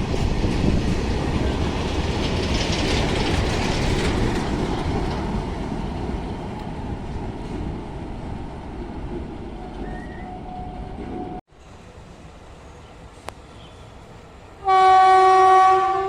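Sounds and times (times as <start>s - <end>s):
freight train rolling past: 0.0s - 16.0s.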